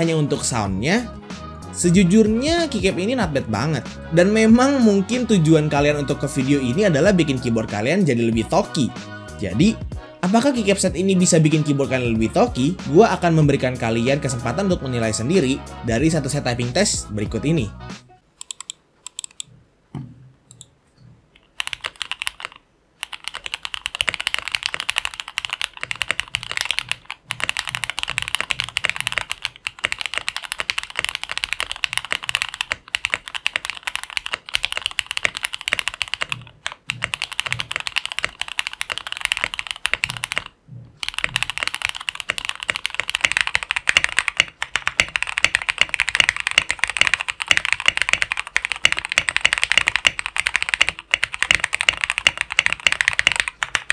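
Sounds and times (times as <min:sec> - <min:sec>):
fast typing on mechanical keyboard: 0:21.5 - 0:53.9.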